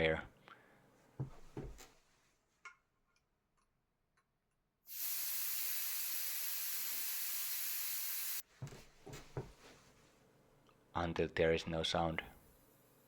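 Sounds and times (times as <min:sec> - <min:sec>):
air hissing from tire valve: 0:04.9 - 0:08.4.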